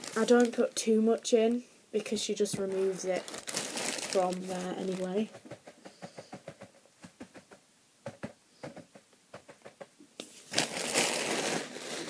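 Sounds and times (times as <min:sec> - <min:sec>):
paper bedding rustling: 0:02.5 - 0:05.5, 0:10.5 - 0:12.0.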